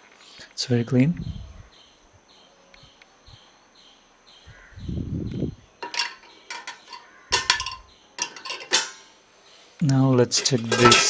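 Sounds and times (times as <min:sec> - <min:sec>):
metal dishes clinking: 0:05.8 - 0:09.2, 0:10.2 - 0:11.0.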